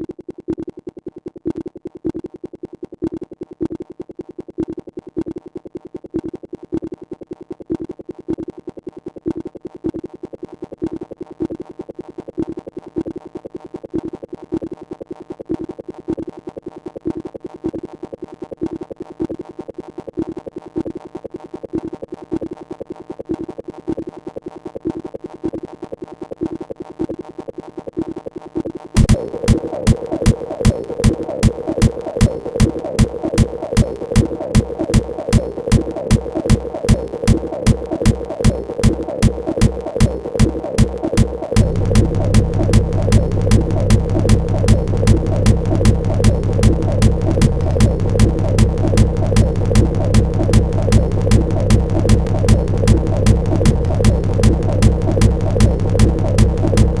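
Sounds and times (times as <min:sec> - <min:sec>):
acid synthesizer line: 0:28.9 - 0:57.0.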